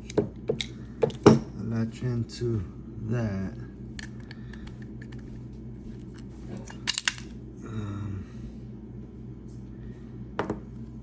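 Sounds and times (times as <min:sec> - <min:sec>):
small metal parts clicking: 0:06.1 - 0:07.3.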